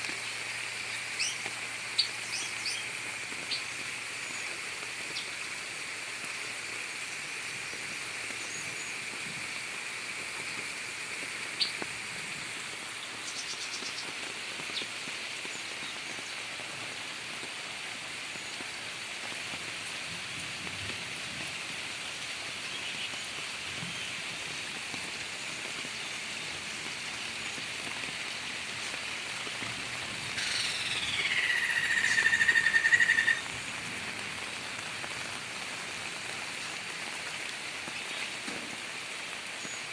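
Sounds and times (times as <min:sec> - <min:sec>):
rain hiss: 0:00.0 - 0:39.9
faint bird chirps: 0:30.4 - 0:33.4
loud bird call sliding down: 0:30.4 - 0:33.4.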